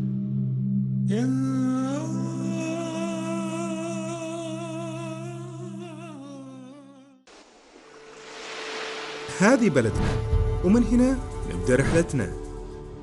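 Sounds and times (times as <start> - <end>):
man humming long note: 1.0 - 7.2.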